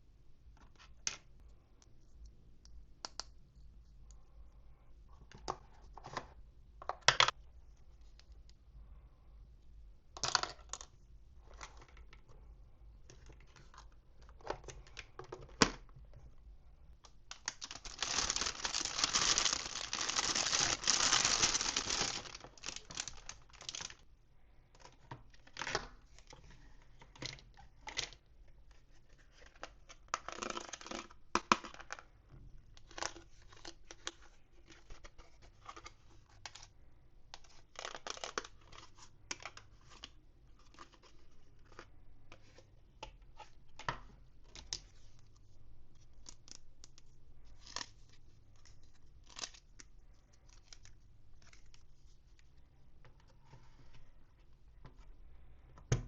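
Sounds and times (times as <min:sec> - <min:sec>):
packaging crinkling and rustling: 0:17.0 - 0:24.0
packaging tearing: 0:17.3 - 0:24.0.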